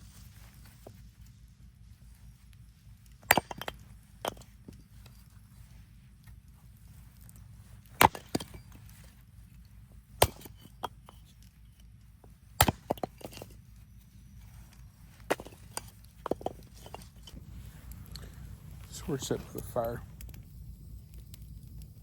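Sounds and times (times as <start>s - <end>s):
axe chopping firewood: 3.2s - 4.5s, 7.8s - 8.7s, 10.1s - 11.1s, 12.6s - 13.5s, 15.2s - 18.3s.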